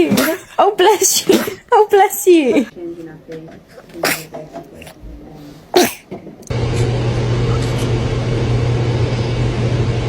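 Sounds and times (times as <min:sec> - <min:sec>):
baby sneezing: 0:00.1 - 0:00.5, 0:01.1 - 0:01.6, 0:03.9 - 0:05.0, 0:05.7 - 0:06.2.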